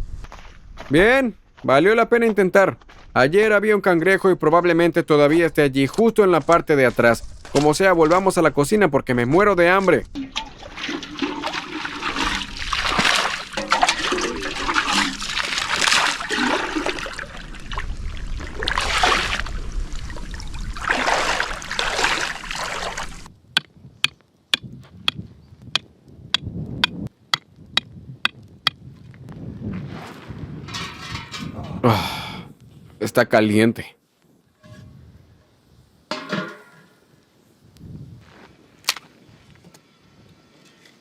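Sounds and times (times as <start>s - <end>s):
seawater sloshing and splashing: 10.2s - 23.3s.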